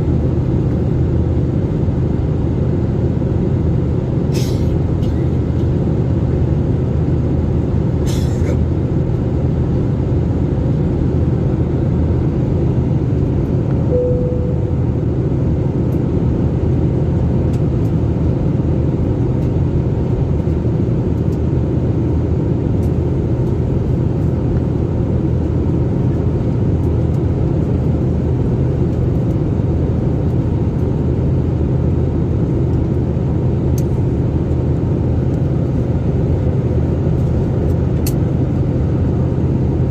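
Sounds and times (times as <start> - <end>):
airliner cabin rumble: 0.0 - 39.9
faint tone: 13.8 - 15.2.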